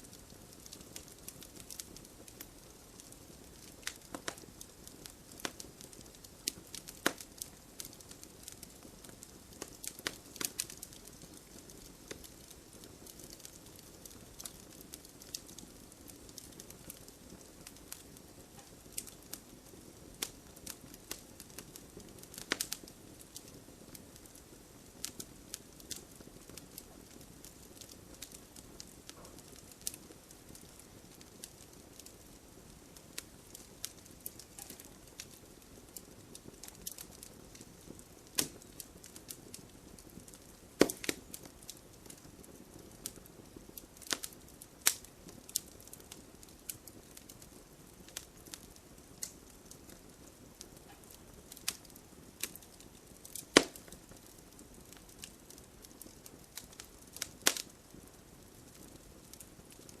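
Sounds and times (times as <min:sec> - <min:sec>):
campfire crackling: 0:00.0 - 1:00.0
fire hissing: 0:00.1 - 1:00.0
loud fire pops: 0:00.5 - 0:57.8.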